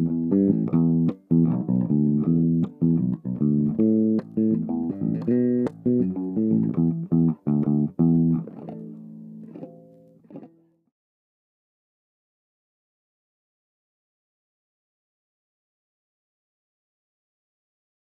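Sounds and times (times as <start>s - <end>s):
clean electric guitar plucked chords: 0.0s - 10.6s.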